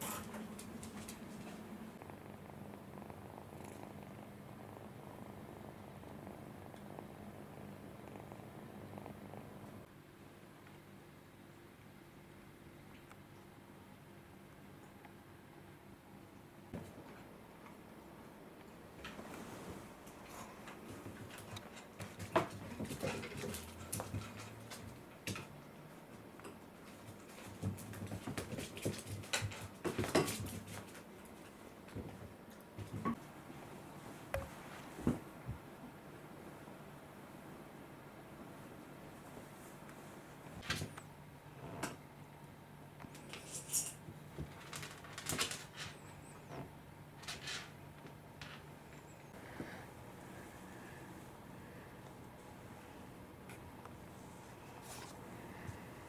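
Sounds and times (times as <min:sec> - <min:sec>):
pet tapping and scuffling: 0:00.0 - 0:02.0, 0:19.0 - 0:33.3
cat purring: 0:00.0 - 0:09.9.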